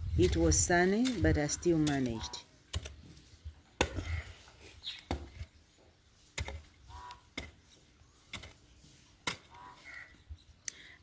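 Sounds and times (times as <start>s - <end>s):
digging tool striking stony ground: 0.2s - 3.0s, 3.8s - 4.2s, 4.9s - 5.5s, 6.3s - 8.6s, 9.2s - 9.7s.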